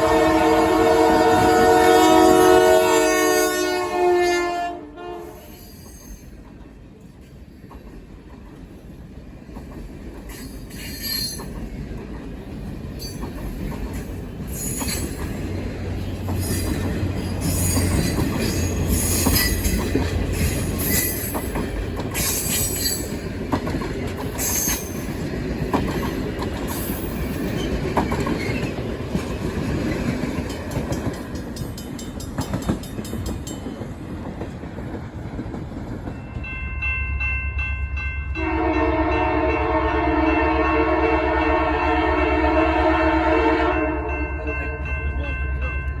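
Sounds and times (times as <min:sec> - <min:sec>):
train wheels rumbling on track: 0:00.0 - 0:46.0
metallic wheel squeals: 0:10.7 - 0:11.5.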